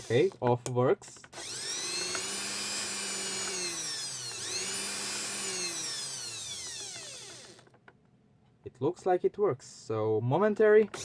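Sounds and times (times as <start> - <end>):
blender motor whine: 0.0 - 0.4, 1.4 - 7.7.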